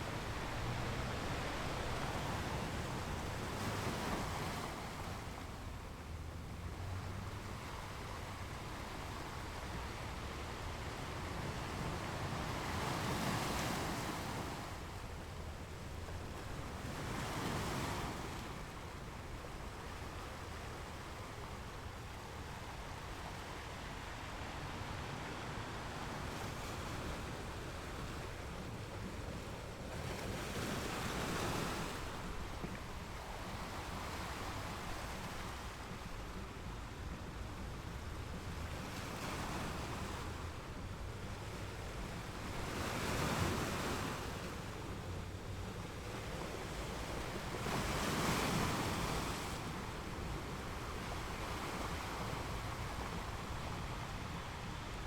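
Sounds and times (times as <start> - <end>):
ocean waves breaking on beach: 0.0 - 55.0.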